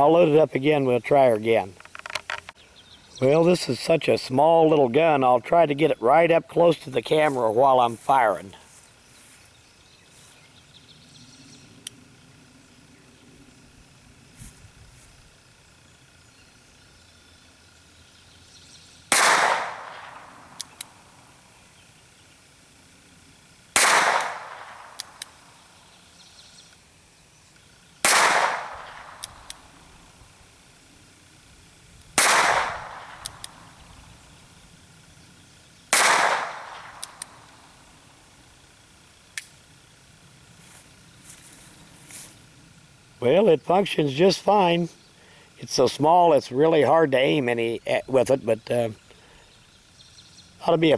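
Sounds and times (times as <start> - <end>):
revolver gunshots: 19.1 - 20.6, 23.7 - 25.5, 28.0 - 29.7, 32.2 - 33.8, 35.9 - 37.6
revolver hammer cocking clicks: 23.8 - 25.4, 28.1 - 29.7, 32.0 - 33.6, 36.0 - 37.4.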